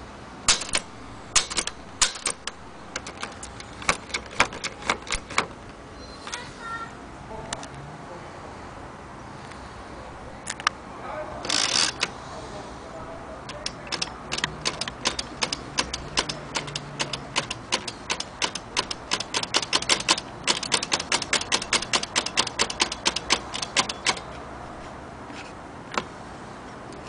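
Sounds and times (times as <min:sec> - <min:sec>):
typewriter key strikes: 0:00.5 - 0:05.5, 0:13.5 - 0:24.3.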